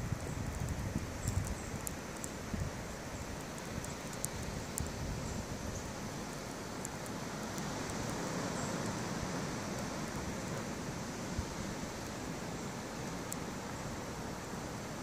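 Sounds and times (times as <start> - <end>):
faint clicks: 0.4 - 2.4, 3.4 - 5.0.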